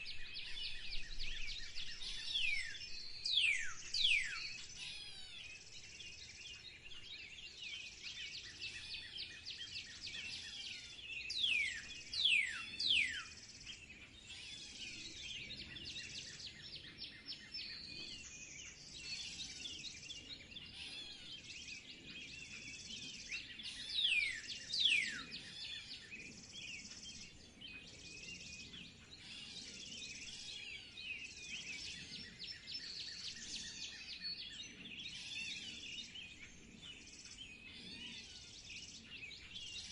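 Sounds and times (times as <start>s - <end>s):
sharply falling whistled bird calls: 0.0s - 5.6s
birds chirping in chorus: 0.0s - 39.9s.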